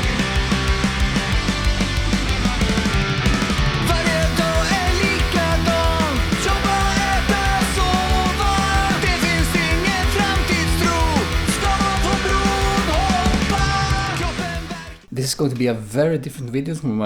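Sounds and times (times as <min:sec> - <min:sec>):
rock song with drum beat: 0:00.0 - 0:15.1.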